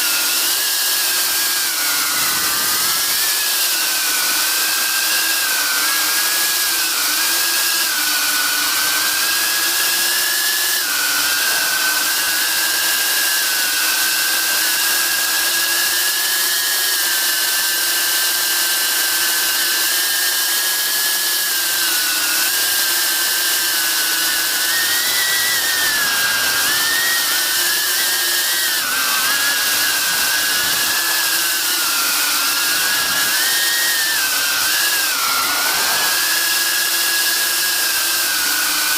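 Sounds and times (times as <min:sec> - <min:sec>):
drone motors whining: 0:00.0 - 0:15.3, 0:21.0 - 0:38.9
loud rushing hiss: 0:35.2 - 0:36.3.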